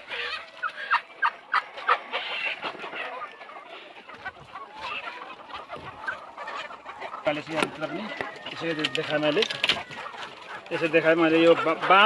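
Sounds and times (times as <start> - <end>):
chickens clucking: 0.0 - 12.0.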